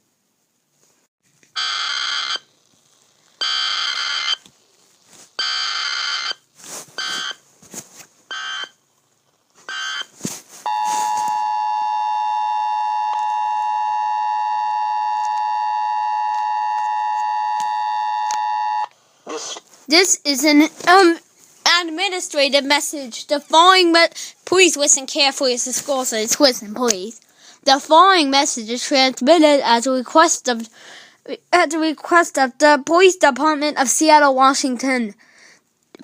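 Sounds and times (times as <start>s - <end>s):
screeching data bursts: 3.4s - 4.5s
two-tone attention signal: 10.7s - 18.9s.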